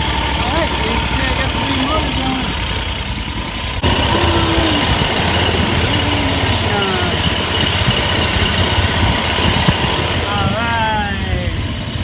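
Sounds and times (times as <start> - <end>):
mud motor engine running: 0.0 - 12.0.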